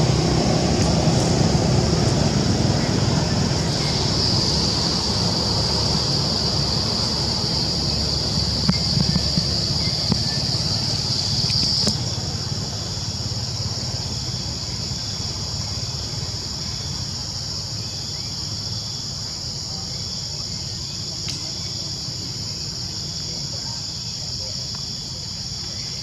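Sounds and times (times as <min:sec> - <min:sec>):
low background rumble: 0:00.0 - 0:19.7
insect chorus drone: 0:00.0 - 0:26.0.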